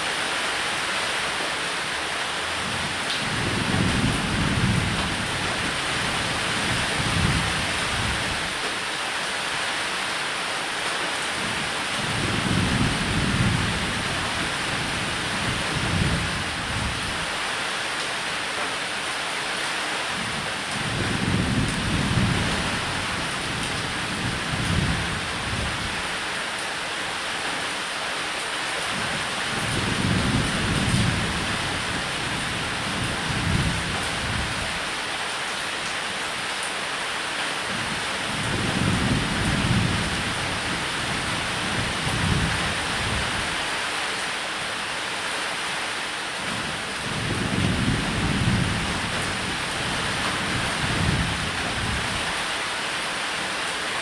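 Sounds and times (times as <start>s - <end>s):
heavy rain hiss: 0.0s - 54.0s
low rolling thunder: 2.6s - 8.6s, 12.0s - 17.1s, 20.8s - 25.9s, 29.8s - 34.8s, 38.3s - 43.5s, 47.0s - 52.4s.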